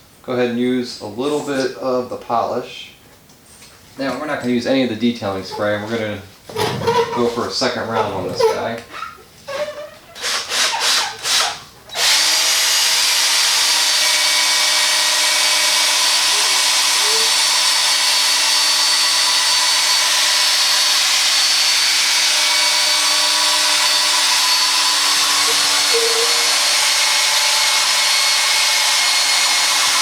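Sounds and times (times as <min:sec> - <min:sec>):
electric polisher running: 0:12.0 - 0:30.0.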